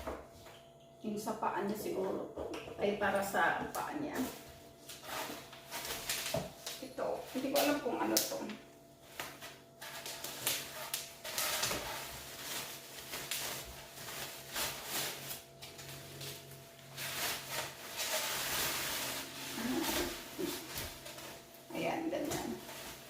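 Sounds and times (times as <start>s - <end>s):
packaging rustling and scraping: 4.1s - 8.2s, 9.0s - 23.0s.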